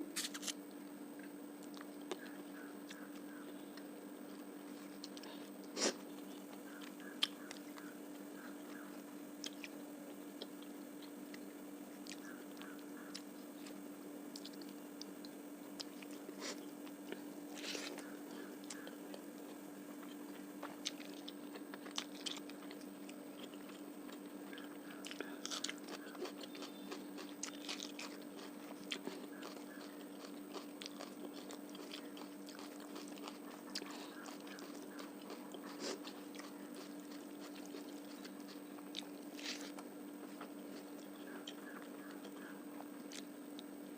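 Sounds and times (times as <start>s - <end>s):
steady low hum: 0.0s - 43.9s
small crunches: 0.2s - 0.8s, 10.4s - 41.6s
close chewing and biting: 17.1s - 41.6s.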